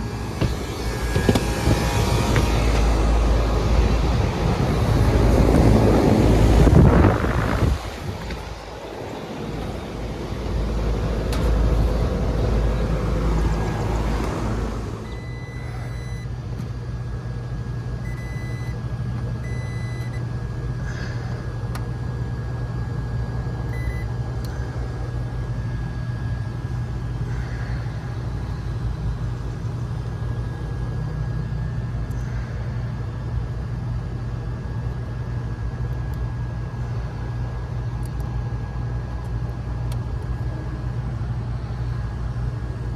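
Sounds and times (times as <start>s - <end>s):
wind buffeting microphone: 0.0s - 15.0s
air conditioning unit humming: 0.0s - 42.9s.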